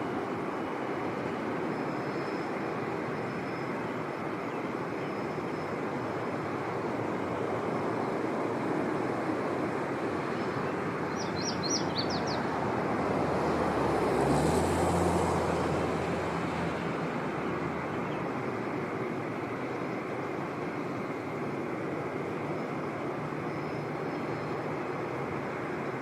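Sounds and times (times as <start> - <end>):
rushing background noise: 0.0 - 26.0
small bird chirping: 10.3 - 12.5.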